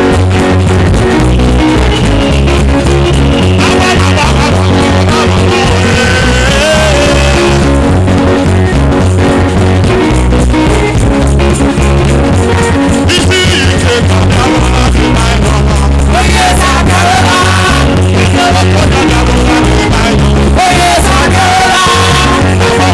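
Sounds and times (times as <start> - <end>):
upbeat music with bass and guitar: 0.0 - 22.9
person singing: 1.0 - 8.2, 13.0 - 22.9.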